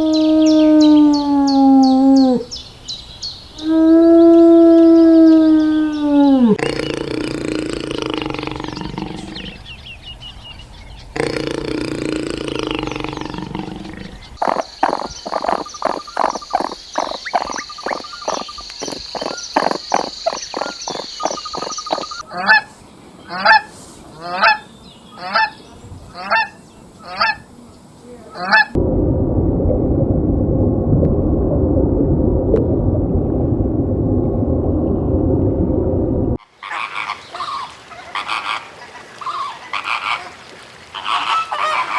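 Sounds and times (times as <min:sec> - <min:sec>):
fast short animal call pulses: 0:14.4 - 0:22.2
animal honking calls: 0:14.4 - 0:22.6
low rough noise: 0:28.8 - 0:36.4.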